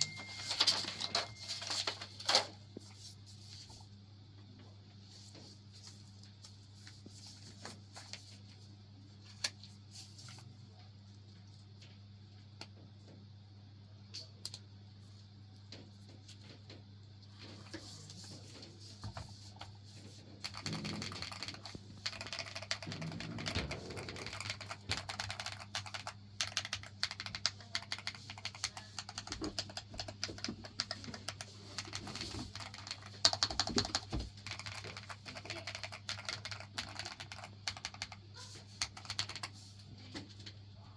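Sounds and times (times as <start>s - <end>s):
mechanical keyboard typing: 20.4s - 39.5s.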